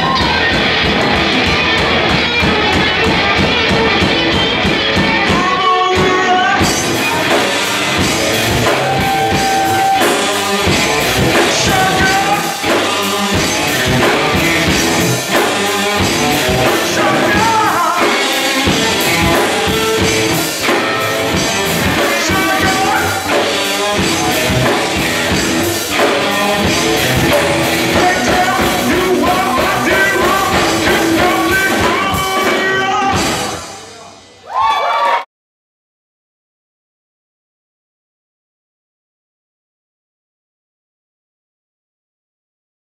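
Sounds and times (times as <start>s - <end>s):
electric guitars: 0.0s - 33.8s
drum kit: 0.0s - 34.1s
person singing: 1.4s - 33.8s.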